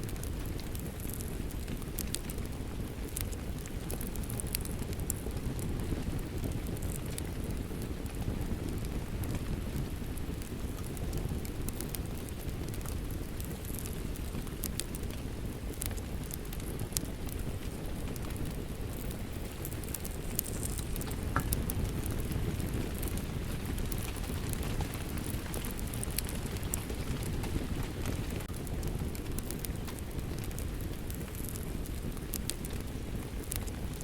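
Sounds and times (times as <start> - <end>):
fireplace fire crackling: 0.0 - 34.0
steady rain: 0.0 - 34.0.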